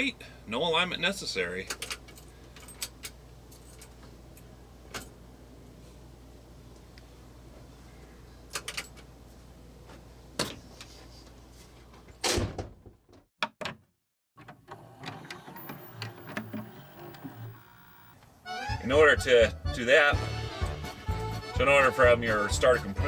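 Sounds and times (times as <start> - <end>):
low steady hum: 15.5 - 18.3.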